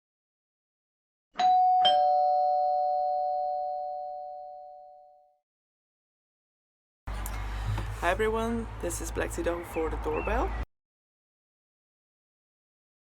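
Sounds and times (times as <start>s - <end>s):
two-tone doorbell chime: 1.4s - 5.3s.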